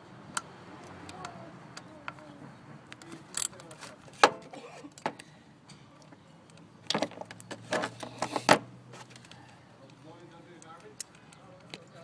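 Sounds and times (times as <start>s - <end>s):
tools clicking and rattling: 2.9s - 4.0s, 9.1s - 12.0s.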